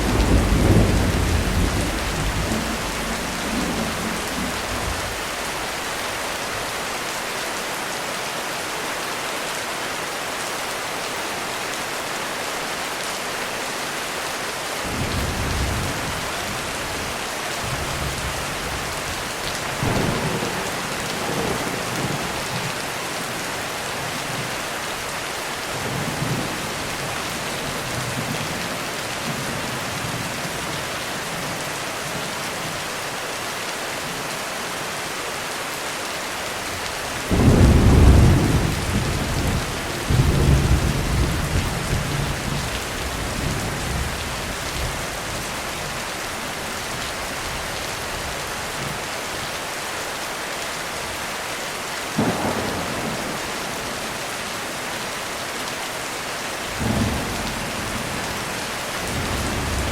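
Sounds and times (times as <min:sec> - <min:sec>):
thunder: 0:00.0 - 0:05.1, 0:19.8 - 0:22.7, 0:52.2 - 0:54.1
heavy rain on a roof: 0:00.0 - 0:59.9.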